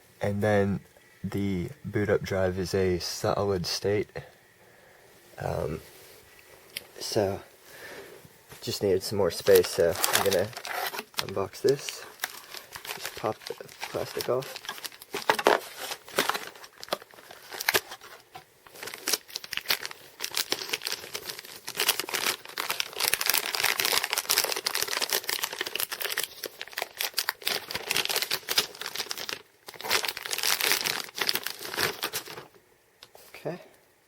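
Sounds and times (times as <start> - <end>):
plastic packaging crinkling: 8.6 - 33.1.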